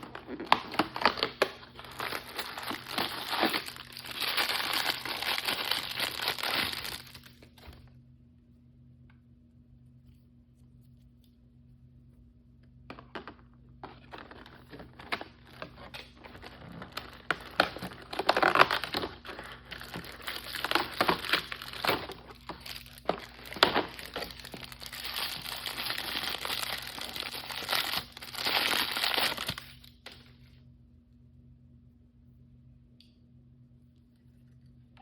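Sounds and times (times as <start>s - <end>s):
plastic packaging crinkling: 0.0s - 7.7s, 13.8s - 30.1s.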